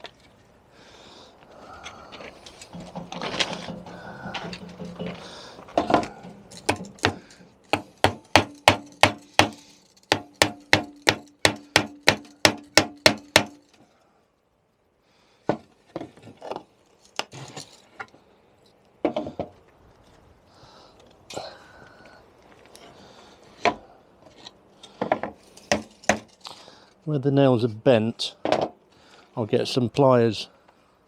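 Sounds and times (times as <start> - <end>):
hammer knocking nails out of wood: 2.8 - 13.6.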